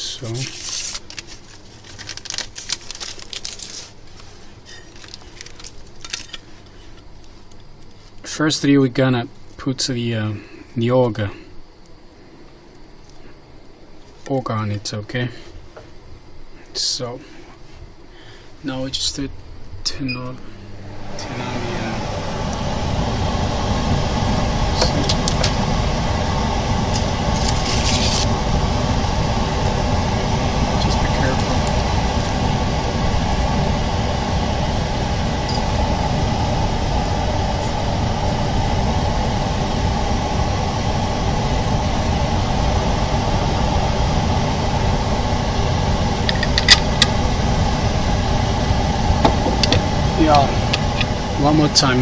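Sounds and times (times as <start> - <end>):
plastic film crinkling: 0.4 - 6.5
machine motor humming: 20.0 - 52.0.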